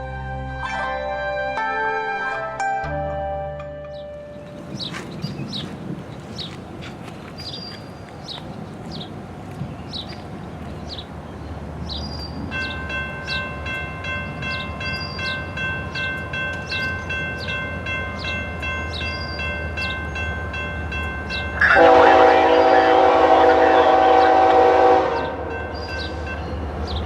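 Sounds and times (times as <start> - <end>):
bird chirping: 3.9 - 20.4, 25.7 - 27.0
railroad crossing bell ringing: 11.8 - 27.0.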